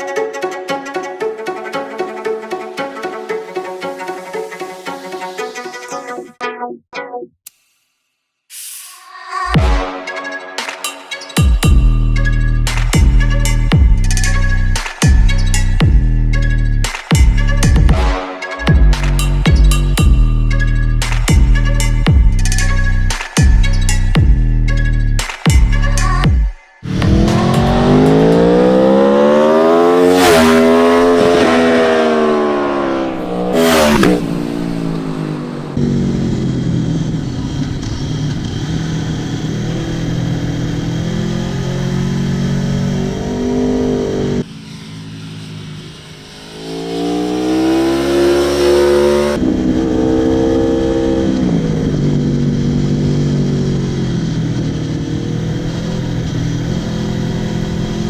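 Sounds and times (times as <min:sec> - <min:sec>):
motorcycle engine revving: 0:26.8 - 0:58.0.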